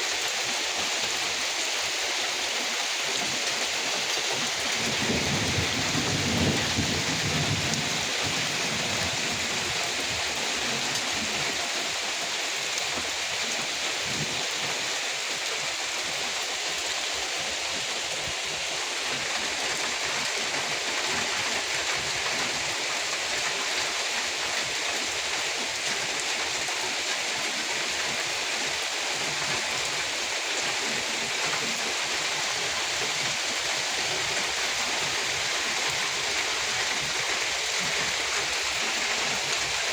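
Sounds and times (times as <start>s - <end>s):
dense rainfall: 0.0s - 39.9s.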